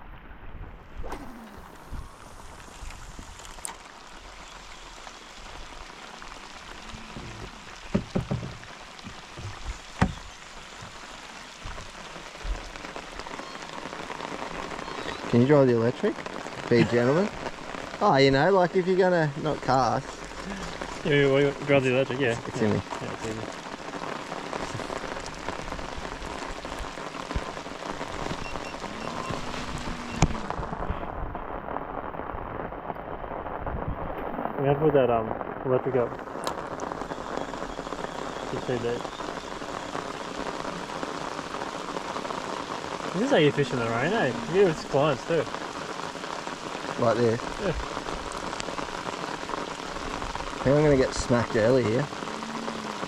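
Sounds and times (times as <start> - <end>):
rain falling: 0.0 - 53.0
knocks: 7.2 - 10.2.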